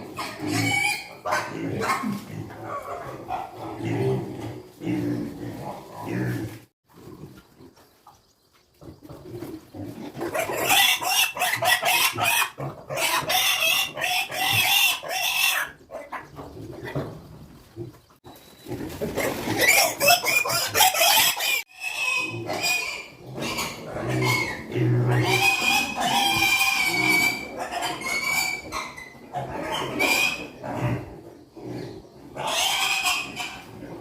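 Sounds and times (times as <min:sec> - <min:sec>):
piglets squealing: 0:00.1 - 0:02.0, 0:10.3 - 0:16.2, 0:19.2 - 0:31.0, 0:32.4 - 0:33.7.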